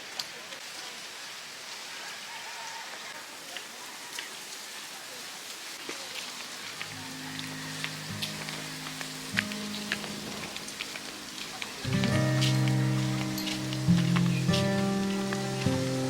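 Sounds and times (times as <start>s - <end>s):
steady rain falling: 0.0s - 16.0s
steady musical tones: 6.9s - 16.0s.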